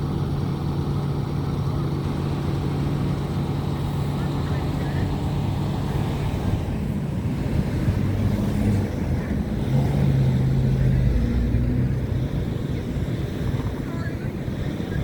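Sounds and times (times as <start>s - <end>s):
vehicle engines rumbling: 0.0s - 15.0s.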